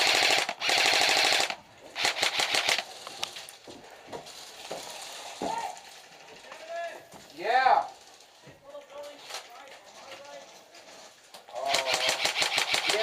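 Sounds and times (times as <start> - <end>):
airsoft gun firing: 0.0 - 2.9, 11.6 - 13.0.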